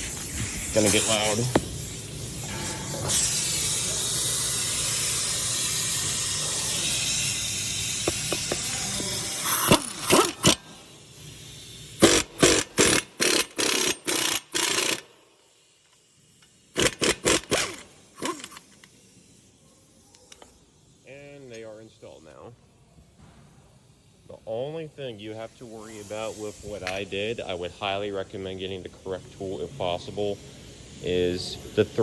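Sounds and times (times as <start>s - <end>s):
impact wrench: 0.0s - 20.6s.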